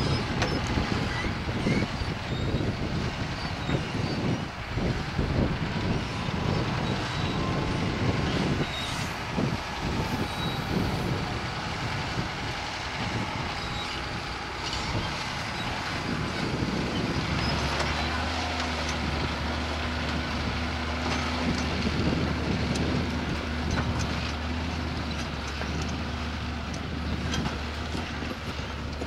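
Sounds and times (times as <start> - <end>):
low engine drone: 0.0 - 29.0
tractor rumbling under load: 0.0 - 29.0.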